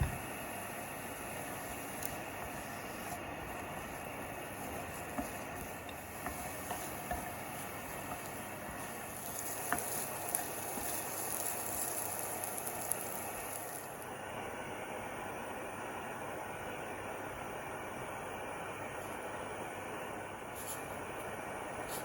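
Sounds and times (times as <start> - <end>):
small pops and crackles: 0.0 - 14.0
chicken sizzling in a frying pan: 0.0 - 14.1.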